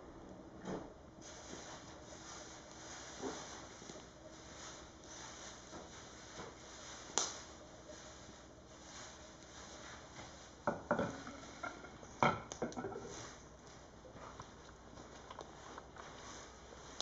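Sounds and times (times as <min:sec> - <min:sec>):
firewood hissing: 0:01.2 - 0:12.0.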